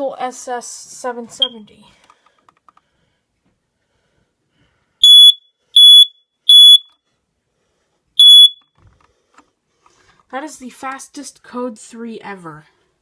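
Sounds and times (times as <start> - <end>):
smoke alarm beeping: 5.0 - 7.0, 8.2 - 8.8.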